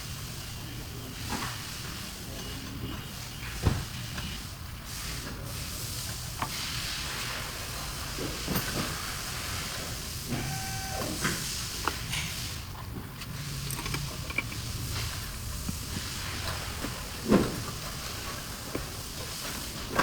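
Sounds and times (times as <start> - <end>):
steady hiss: 3.1 - 20.0
brief squeak: 10.3 - 11.3.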